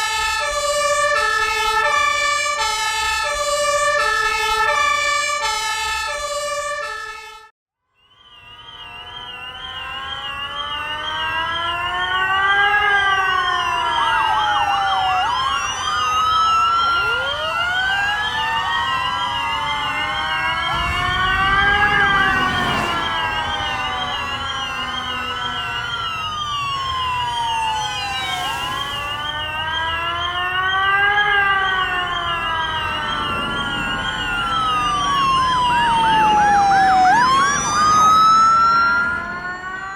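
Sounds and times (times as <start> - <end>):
emergency vehicle sirens: 0.0 - 39.9
low rumble: 20.7 - 24.6.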